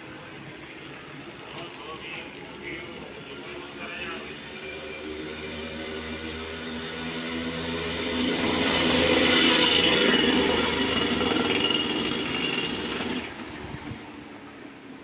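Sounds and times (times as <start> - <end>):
motor engine buzzing: 5.0 - 13.9.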